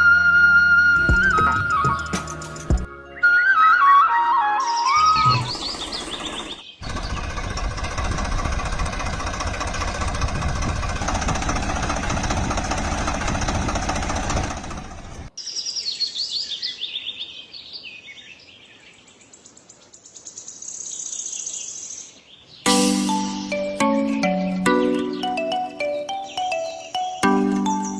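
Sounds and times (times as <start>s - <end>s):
birds chirping: 1.1s - 11.0s, 15.0s - 27.9s
loud dense rattling: 5.7s - 15.3s.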